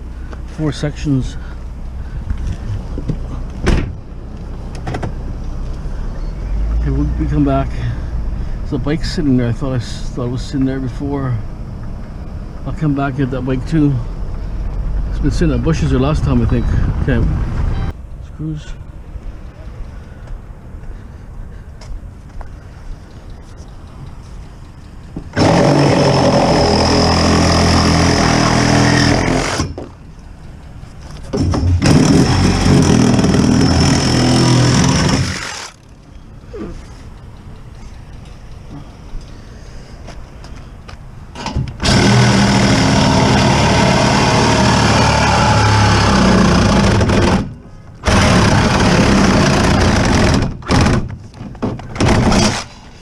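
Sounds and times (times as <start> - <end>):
power tool motor running: 25.4 - 29.8, 31.4 - 35.8, 41.8 - 50.4.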